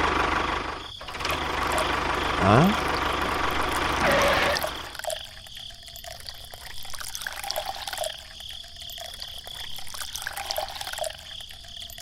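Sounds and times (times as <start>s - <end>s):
water trickling and splashing: 3.1s - 12.0s
water dripping: 4.7s - 12.0s.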